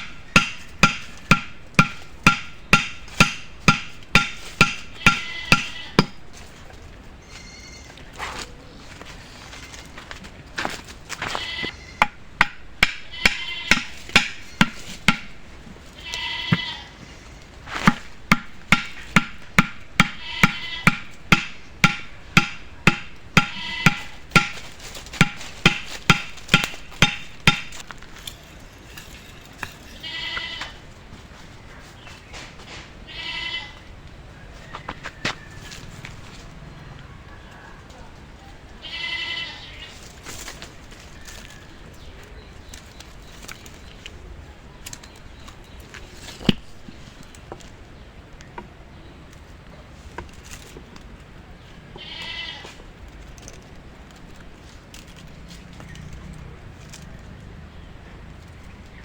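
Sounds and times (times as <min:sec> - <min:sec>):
sharp ringing knocks: 0:00.0 - 0:06.5, 0:12.0 - 0:15.7, 0:17.8 - 0:28.0
steady noisy background: 0:00.0 - 0:59.0
animal bleating: 0:04.8 - 0:06.4, 0:11.2 - 0:12.0, 0:13.0 - 0:14.0, 0:15.8 - 0:17.4, 0:20.0 - 0:21.2, 0:23.4 - 0:24.3, 0:29.9 - 0:30.9, 0:33.1 - 0:33.9, 0:38.8 - 0:40.0, 0:52.0 - 0:52.8.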